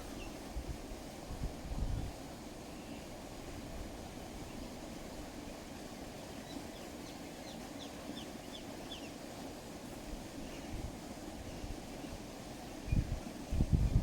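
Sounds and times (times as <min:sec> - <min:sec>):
low wind rumble: 0:00.0 - 0:06.0, 0:09.4 - 0:14.0.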